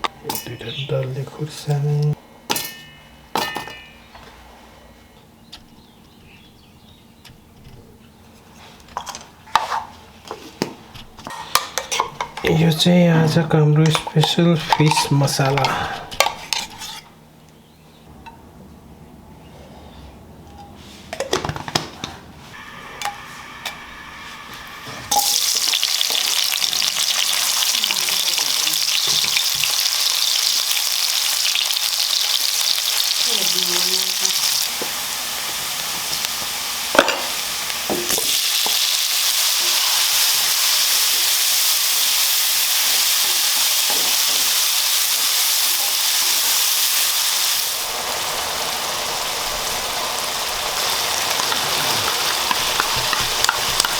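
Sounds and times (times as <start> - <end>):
utensils clinking: 0.0 - 1.3, 2.0 - 4.2, 11.3 - 17.2, 24.5 - 30.2, 33.3 - 41.4, 49.8 - 53.9
food sizzling in hot oil: 22.6 - 53.9.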